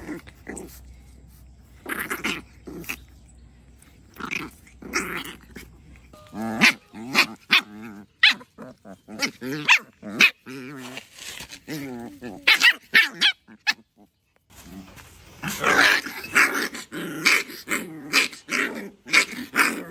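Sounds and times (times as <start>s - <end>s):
puppy growling: 0.0s - 11.0s, 11.6s - 14.1s, 14.7s - 19.9s
puppy yapping and barking: 6.3s - 10.4s, 12.4s - 13.8s.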